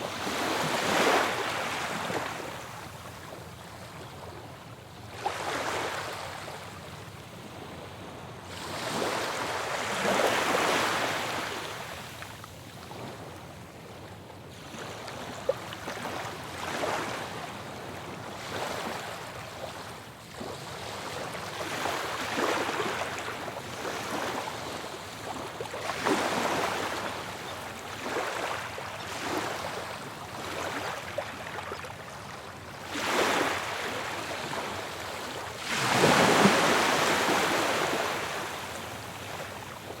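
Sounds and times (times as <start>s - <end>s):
ocean waves breaking on shore: 0.0s - 2.9s, 8.5s - 12.2s, 14.6s - 40.0s.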